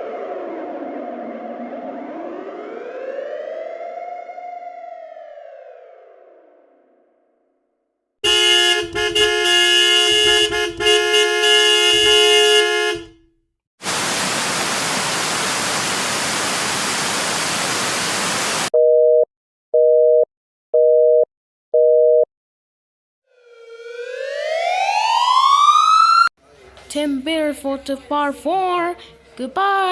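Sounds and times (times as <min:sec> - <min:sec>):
harsh horn-like blare: 0:08.2 - 0:13.3
white-noise static: 0:13.8 - 0:18.7
telephone busy-signal beeps: 0:18.8 - 0:22.3.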